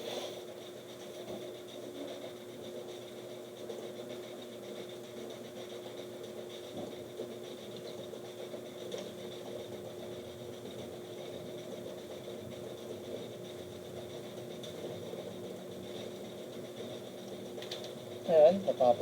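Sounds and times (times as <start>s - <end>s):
fan humming: 10.0s - 19.0s.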